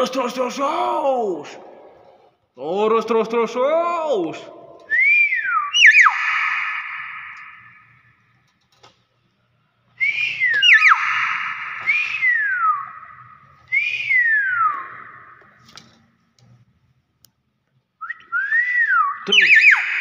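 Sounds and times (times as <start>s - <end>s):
bird giving whistled calls: 4.9s - 8.0s, 10.0s - 15.4s, 18.3s - 20.0s.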